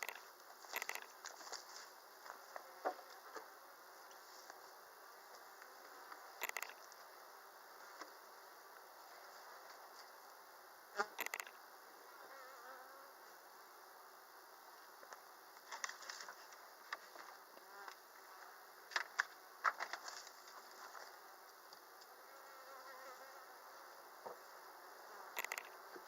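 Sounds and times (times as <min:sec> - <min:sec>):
sharp clicks and knocks: 0:00.0 - 0:01.2, 0:06.4 - 0:06.8, 0:11.2 - 0:11.6, 0:25.4 - 0:25.8.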